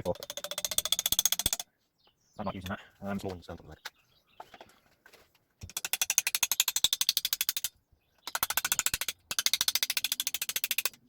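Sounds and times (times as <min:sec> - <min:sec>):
ratchet wrench clicking: 0:05.7 - 0:07.7, 0:08.3 - 0:11.0.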